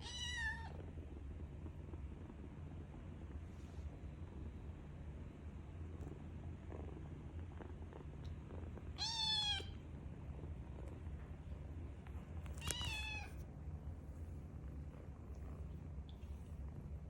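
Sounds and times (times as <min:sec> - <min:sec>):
kitten meowing: 0:09.0 - 0:09.7, 0:12.6 - 0:13.4.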